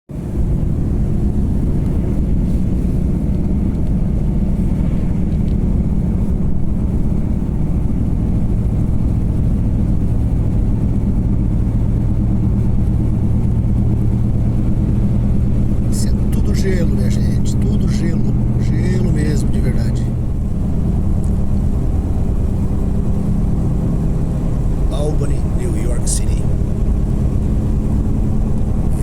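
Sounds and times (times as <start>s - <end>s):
vehicle engine and road noise: 0.1s - 29.0s.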